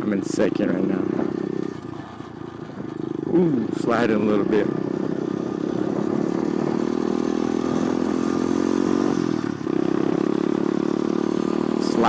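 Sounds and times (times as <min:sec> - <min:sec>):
motorbike engine droning: 0:00.0 - 0:12.0.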